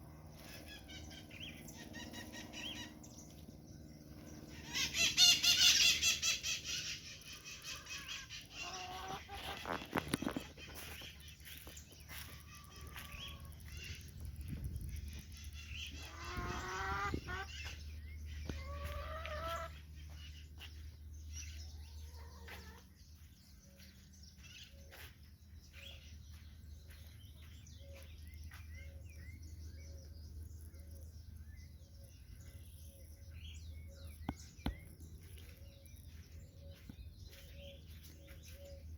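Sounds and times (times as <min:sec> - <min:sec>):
small birds chirping: 0:00.0 - 0:38.9
chickens clucking: 0:04.6 - 0:20.8, 0:21.8 - 0:22.9.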